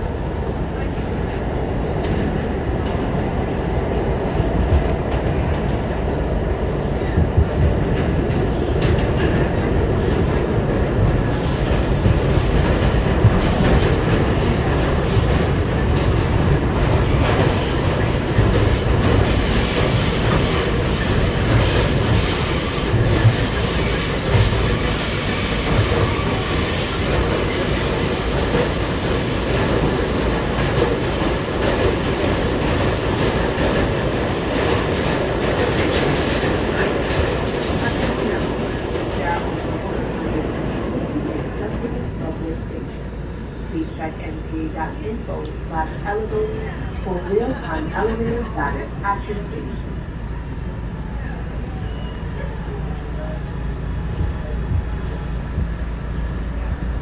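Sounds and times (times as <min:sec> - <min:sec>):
steel wheels rumbling on rails: 0:00.0 - 0:42.4
rail clacks: 0:00.8 - 0:42.0.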